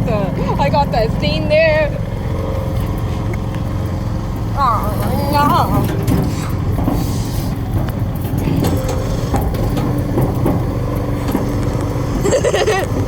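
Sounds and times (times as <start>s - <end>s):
riding lawnmower engine running: 0.0s - 13.0s
light clicks and rattles: 2.8s - 13.0s.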